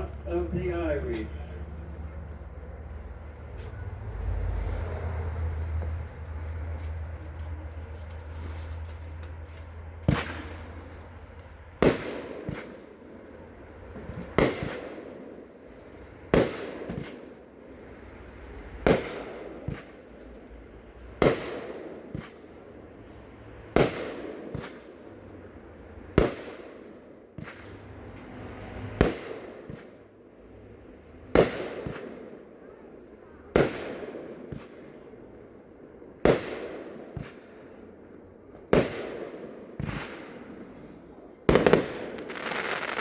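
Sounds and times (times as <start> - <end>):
small firework pops: 8.9 - 12.8, 13.8 - 15.0, 16.3 - 17.2, 18.5 - 20.0, 21.2 - 22.4, 23.8 - 24.9, 26.2 - 26.8, 27.4 - 28.3, 29.0 - 30.0, 31.3 - 32.3, 33.5 - 34.9, 36.2 - 37.5, 38.7 - 40.6, 41.5 - 43.0
firework bangs: 9.8 - 20.2, 21.0 - 43.0.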